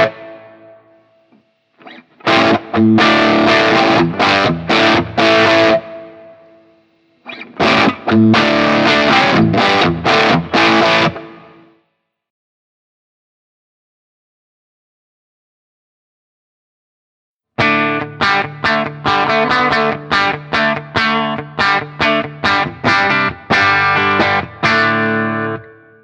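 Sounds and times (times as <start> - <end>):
distorted electric guitar chords: 0.0 - 0.9, 1.8 - 11.8, 17.6 - 26.0.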